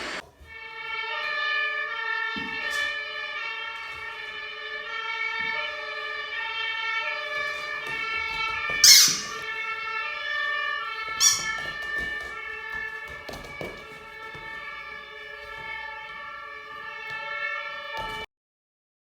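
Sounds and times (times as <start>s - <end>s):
sharp noisy burst: 0.0s - 0.2s
siren through a speaker: 0.0s - 18.3s.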